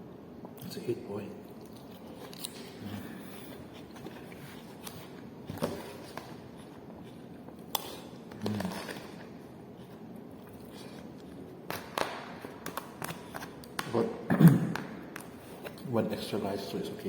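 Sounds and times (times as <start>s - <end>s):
faint chewing: 1.5s - 11.8s.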